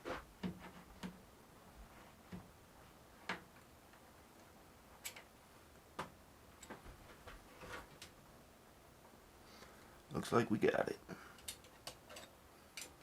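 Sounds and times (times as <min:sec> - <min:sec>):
metal parts clicking and tapping: 0:05.0 - 0:05.3, 0:11.4 - 0:13.0.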